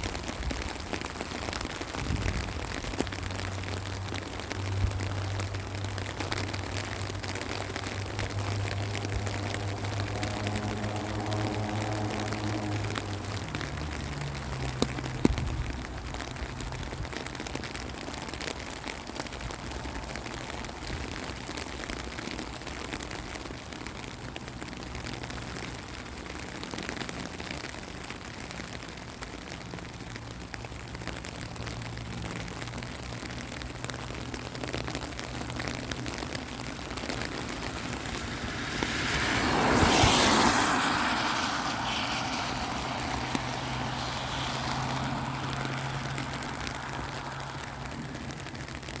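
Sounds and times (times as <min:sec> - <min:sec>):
vehicle passing: 0:00.0 - 0:17.1, 0:35.4 - 0:49.0
low engine hum: 0:00.0 - 0:49.0
rain hissing: 0:00.0 - 0:49.0.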